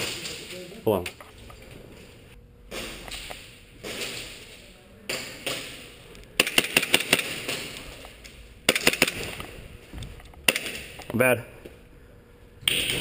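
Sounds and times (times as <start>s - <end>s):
airsoft gunfire cracks: 8.7s - 9.3s.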